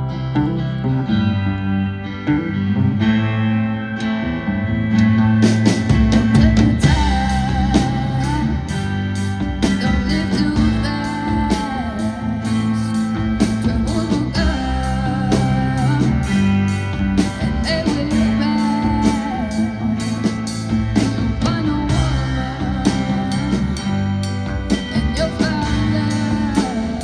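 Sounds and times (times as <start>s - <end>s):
rock band playing: 0.0s - 27.0s
steady drum beat: 5.0s - 27.0s.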